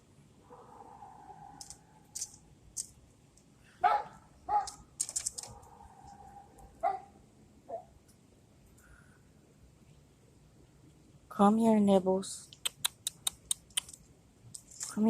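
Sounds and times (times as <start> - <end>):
animal barking: 3.8 - 4.8, 5.4 - 7.9
quick high clicks: 12.5 - 14.0.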